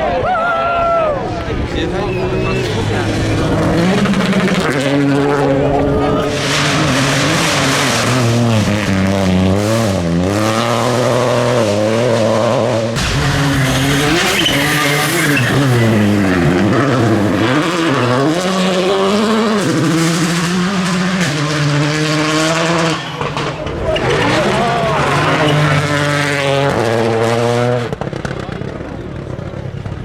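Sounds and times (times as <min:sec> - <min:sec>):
gravel and tyre noise: 0:00.0 - 0:30.0
rally car engines revving: 0:00.0 - 0:30.0.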